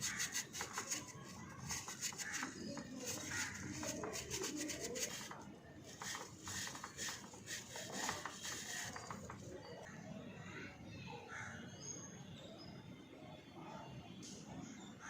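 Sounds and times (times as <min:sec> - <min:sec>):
stiff brush scrubbing a chain: 0:00.0 - 0:09.5.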